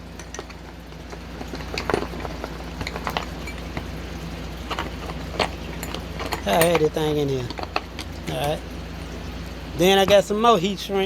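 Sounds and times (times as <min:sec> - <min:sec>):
steady low hum: 0:00.0 - 0:11.0
small tools clicking and knocking: 0:00.1 - 0:03.9, 0:04.6 - 0:08.6.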